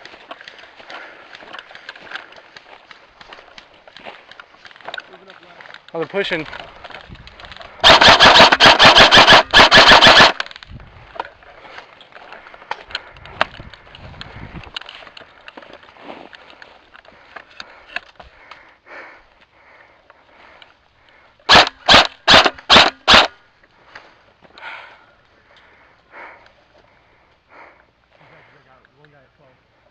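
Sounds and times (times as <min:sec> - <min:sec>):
airsoft rifle single shots: 0:07.8 - 0:10.4, 0:21.5 - 0:23.3
airsoft rifle full-auto burst: 0:07.8 - 0:10.5, 0:21.5 - 0:23.4.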